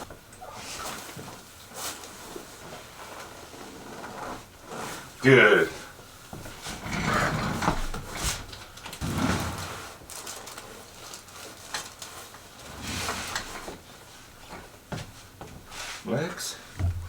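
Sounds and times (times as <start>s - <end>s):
rustling on padded table: 6.1s - 16.0s.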